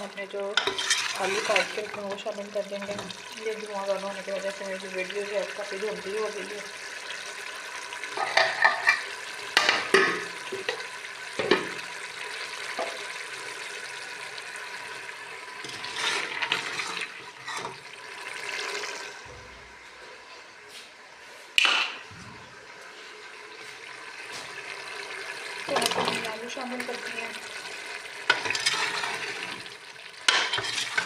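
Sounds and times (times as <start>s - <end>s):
meat sizzling in a pot: 0.0s - 19.2s, 22.8s - 31.0s
spoon scraping a pot: 0.6s - 1.6s, 8.2s - 9.1s, 15.6s - 17.8s, 28.3s - 29.4s, 30.3s - 31.0s.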